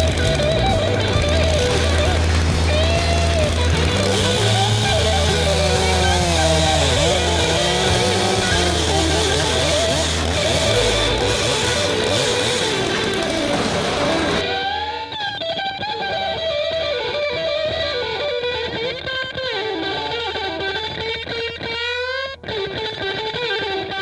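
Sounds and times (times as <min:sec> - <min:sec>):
rock music with electric guitar: 0:00.0 - 0:24.0.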